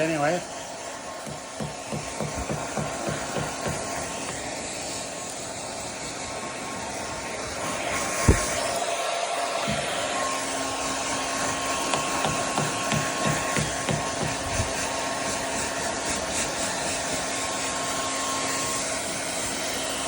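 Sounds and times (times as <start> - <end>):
hair dryer blowing: 0.0 - 20.0
sharp thump: 8.2 - 8.6.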